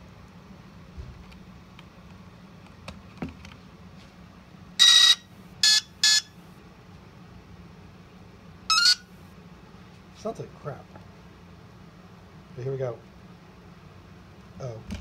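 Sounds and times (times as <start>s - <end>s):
electronic startup beeps: 4.8s - 6.2s.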